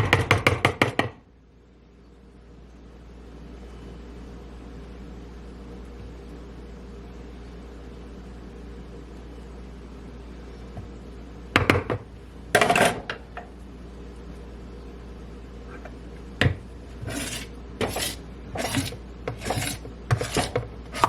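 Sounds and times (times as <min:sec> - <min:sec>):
utensil scraping bowl: 0:16.9 - 0:21.0.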